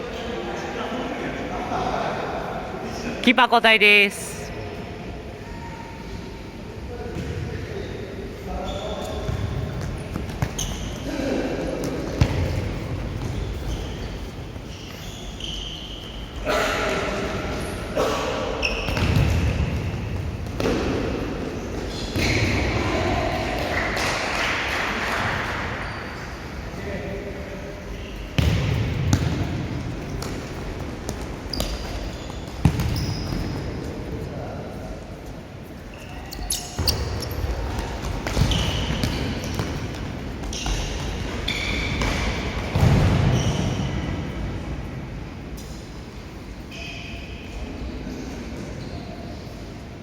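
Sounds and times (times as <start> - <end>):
players' voices: 0.2 - 4.5
shoes squeaking on floor: 8.6 - 11.1, 13.2 - 16.4, 18.6 - 19.2, 31.3 - 33.8, 35.9 - 42.5
ball kicked and bouncing: 32.6 - 33.4.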